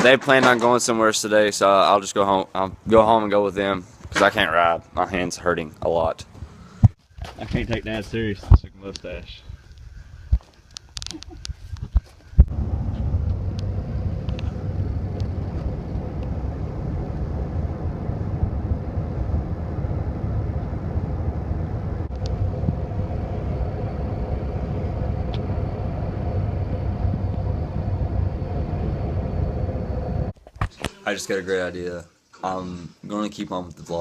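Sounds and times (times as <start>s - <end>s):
car driving with low rumble: 12.4s - 30.3s.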